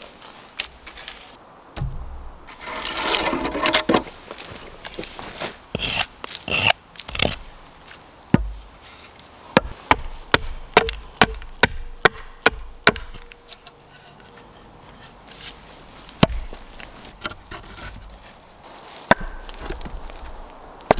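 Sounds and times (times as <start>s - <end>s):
axe chopping wood: 1.8s - 4.1s, 5.8s - 7.6s, 8.4s - 8.7s, 9.6s - 13.4s, 16.2s - 16.5s, 19.1s - 20.9s.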